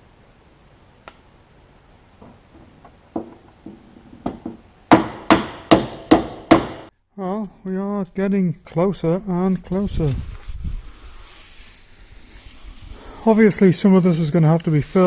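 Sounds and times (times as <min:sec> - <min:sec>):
hammer blows on metal panel: 0:03.1 - 0:06.9.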